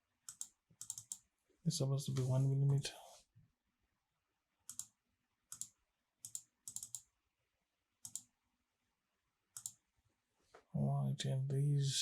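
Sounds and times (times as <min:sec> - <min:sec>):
computer keyboard clicks: 0:00.3 - 0:01.2, 0:04.7 - 0:04.9, 0:05.5 - 0:07.1, 0:08.0 - 0:08.3
computer mouse clicks: 0:00.3 - 0:01.3, 0:04.7 - 0:07.1, 0:08.0 - 0:08.3, 0:09.5 - 0:09.8.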